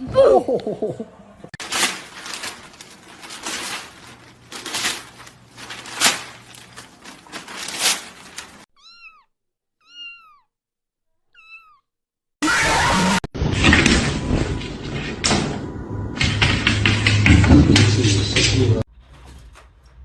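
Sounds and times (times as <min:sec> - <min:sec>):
scuffling and rustling: 0:01.6 - 0:08.6
cat meowing: 0:08.8 - 0:10.5, 0:11.3 - 0:11.9.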